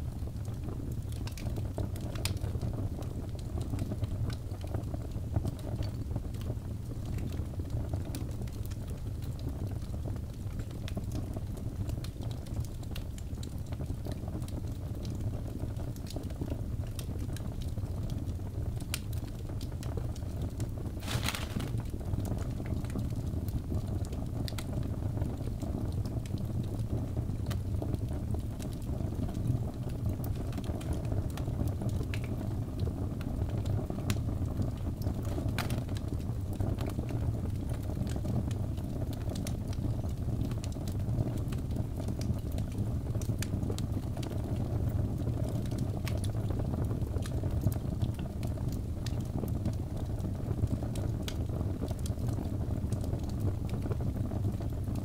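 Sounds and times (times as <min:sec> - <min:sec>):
logs crackling and popping: 0:00.0 - 0:55.0
rush of flames: 0:20.7 - 0:22.5.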